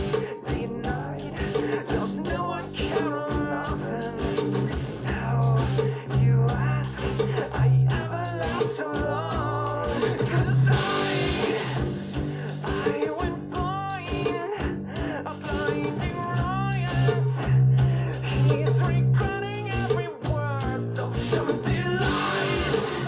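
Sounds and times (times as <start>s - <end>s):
song with guitar and singing: 0.0s - 23.0s.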